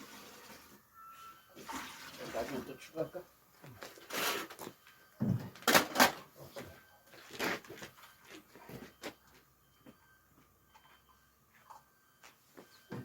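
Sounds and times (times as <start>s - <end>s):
objects knocking and clattering: 4.7s - 6.3s.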